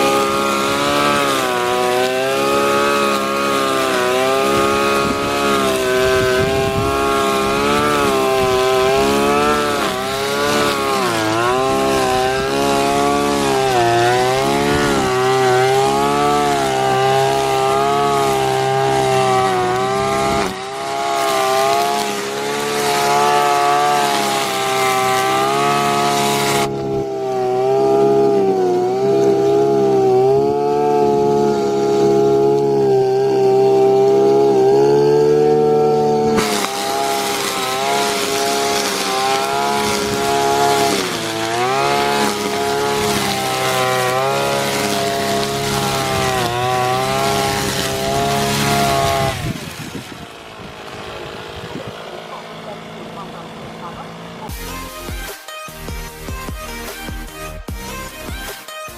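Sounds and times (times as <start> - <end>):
brush cutter engine revving: 0.0 - 58.5.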